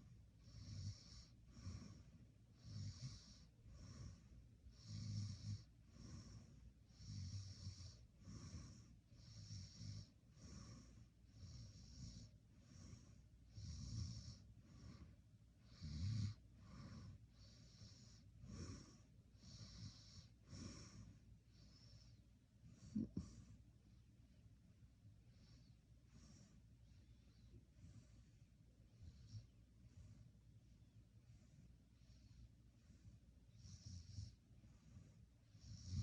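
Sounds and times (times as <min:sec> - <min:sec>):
person snoring faintly: 0:00.4 - 0:23.6, 0:33.5 - 0:36.0.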